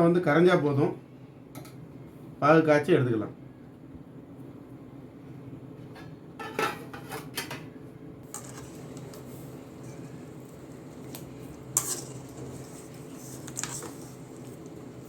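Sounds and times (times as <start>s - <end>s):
steady low hum: 7.8s - 15.0s
metal spoon scraping cooking pot: 8.3s - 10.3s, 11.7s - 14.6s.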